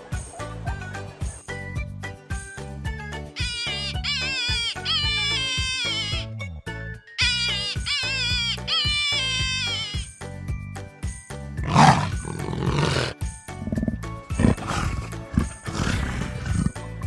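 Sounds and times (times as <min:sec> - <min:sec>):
background music: 0:00.0 - 0:17.0
high wavering call: 0:03.4 - 0:06.3, 0:07.2 - 0:10.2
animal growling roars: 0:11.6 - 0:16.9.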